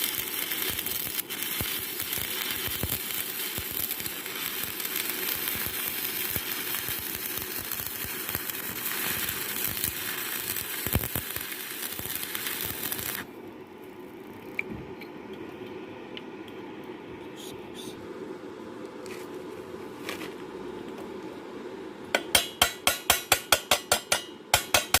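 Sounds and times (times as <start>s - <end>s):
welding arc crackling: 0.0s - 13.3s, 22.2s - 25.0s.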